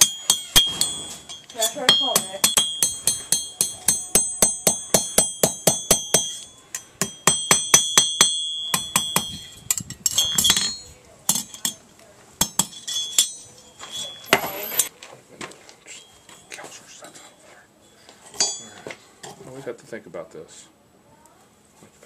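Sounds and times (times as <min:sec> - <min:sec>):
hammer striking anvil: 0:00.0 - 0:09.5, 0:12.4 - 0:14.9.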